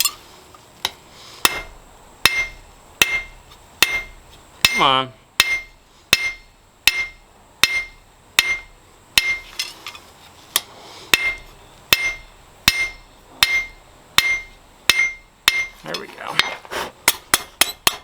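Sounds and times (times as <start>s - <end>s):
hammer striking steel on anvil: 1.4s - 9.7s, 10.6s - 18.0s.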